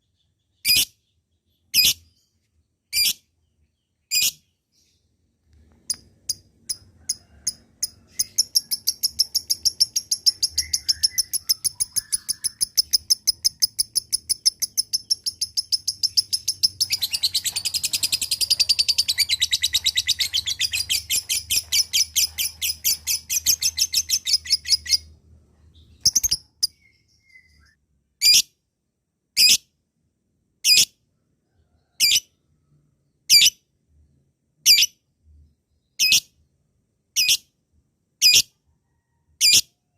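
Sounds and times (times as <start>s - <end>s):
lovebird chattering trill: 5.9s - 25.1s, 26.0s - 26.9s.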